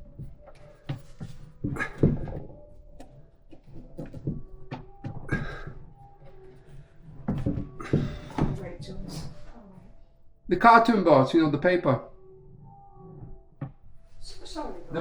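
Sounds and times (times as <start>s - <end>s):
furniture parts knocking and thudding: 0.0s - 9.5s.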